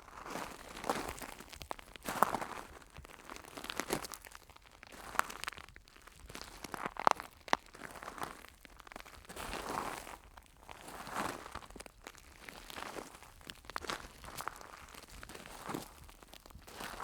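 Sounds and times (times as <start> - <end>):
footsteps crunching on gravel: 0.1 - 4.4.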